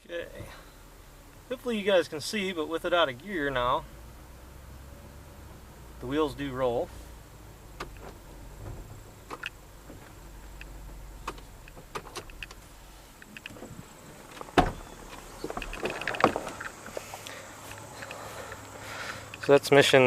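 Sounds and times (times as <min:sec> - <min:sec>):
tractor clicks creaks and knocks: 0:07.8 - 0:19.7.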